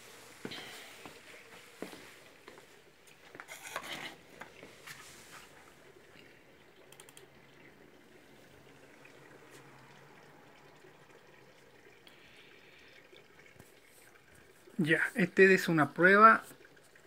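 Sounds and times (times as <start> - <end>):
small ticks: 6.8 - 7.3
faint scattered clicks: 6.8 - 7.7.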